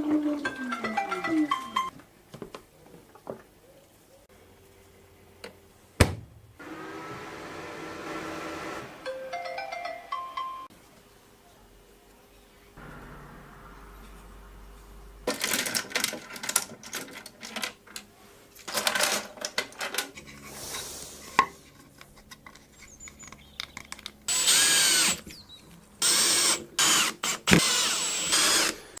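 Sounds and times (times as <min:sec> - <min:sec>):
high-speed spinning device whine: 0:12.8 - 0:15.8.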